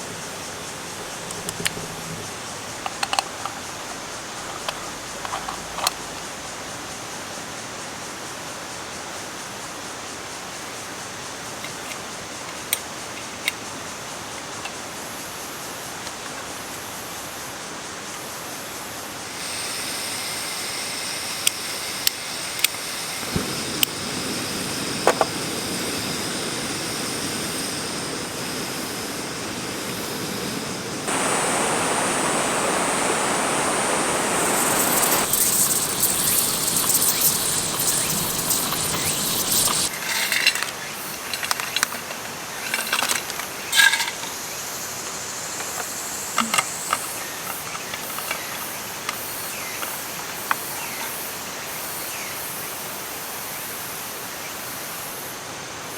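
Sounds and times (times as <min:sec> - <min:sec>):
mountain stream rushing: 0:22.9 - 0:39.9
high-pitched hum: 0:27.1 - 0:39.9.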